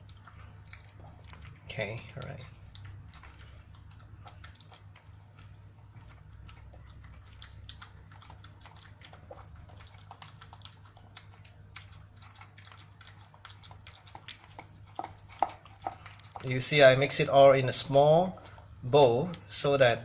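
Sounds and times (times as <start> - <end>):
dog chewing treats: 0.0 - 20.0.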